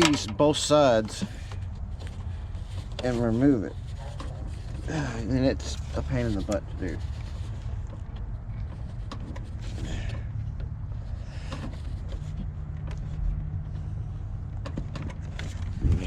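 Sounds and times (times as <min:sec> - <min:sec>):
plastic connector clicks and scrapes: 0:05.6 - 0:09.9.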